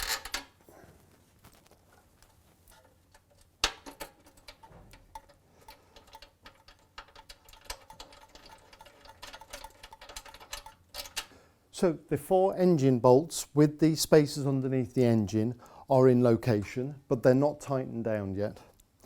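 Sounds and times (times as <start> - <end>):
metallic clicking and tapping: 2.7 - 11.3.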